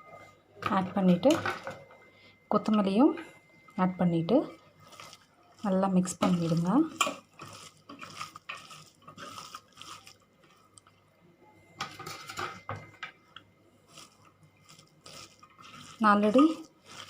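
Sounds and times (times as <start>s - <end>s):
squishing and scraping of mixture: 3.9s - 11.2s, 13.1s - 17.0s.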